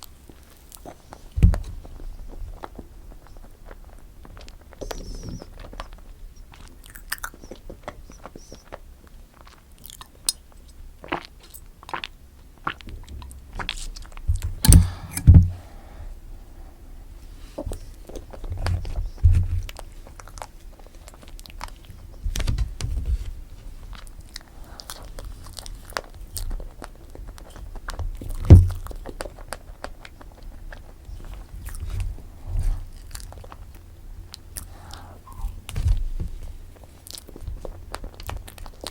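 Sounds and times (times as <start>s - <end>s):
chewing and biting cake: 0.0s - 15.3s, 23.4s - 35.7s, 36.4s - 38.9s
low thumps: 14.3s - 15.7s.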